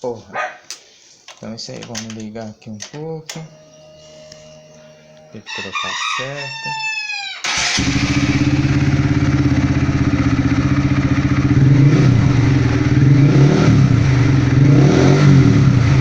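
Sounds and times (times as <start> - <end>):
motorcycle engine idling and revving: 7.5 - 16.0.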